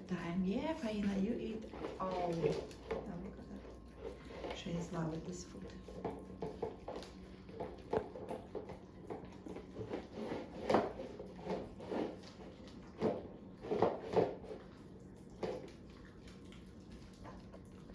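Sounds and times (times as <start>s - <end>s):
dog chewing and licking: 0.0s - 17.9s
dog bowl knocking and scraping: 5.6s - 14.6s.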